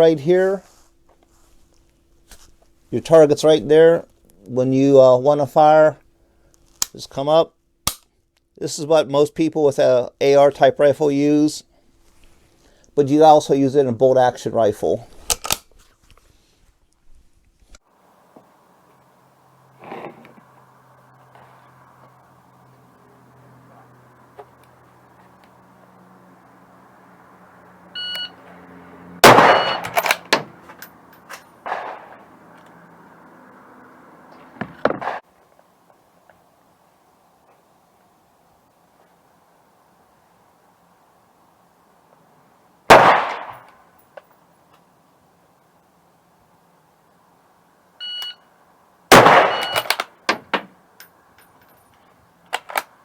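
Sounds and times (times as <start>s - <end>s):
rifle bolt clacking: 15.3s - 15.6s, 29.2s - 31.8s, 49.2s - 50.1s
short electronic beep: 28.0s - 28.4s, 29.6s - 29.9s, 48.0s - 48.4s, 49.5s - 49.8s
loud rifle shot: 29.2s - 30.4s, 31.6s - 32.3s, 34.8s - 35.2s, 42.9s - 43.7s, 49.1s - 50.0s.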